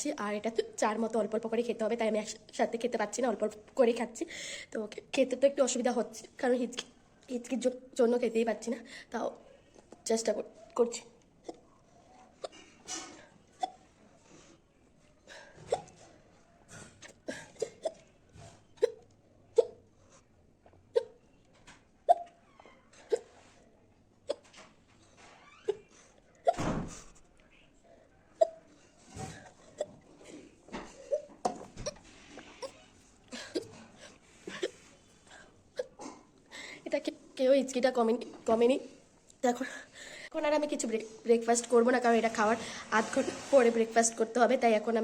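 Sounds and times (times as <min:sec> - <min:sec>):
woman hiccuping: 0:18.8 - 0:19.8, 0:20.9 - 0:21.2, 0:22.1 - 0:22.4, 0:23.1 - 0:23.3, 0:24.2 - 0:24.6, 0:28.4 - 0:28.6.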